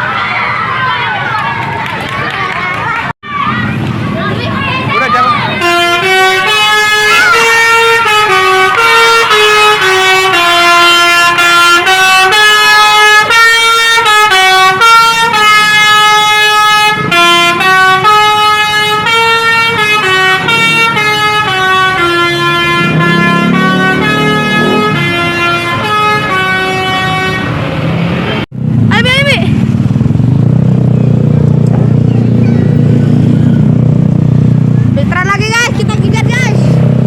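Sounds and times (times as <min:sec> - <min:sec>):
bus horn playing a melody: 0:05.6 - 0:27.6.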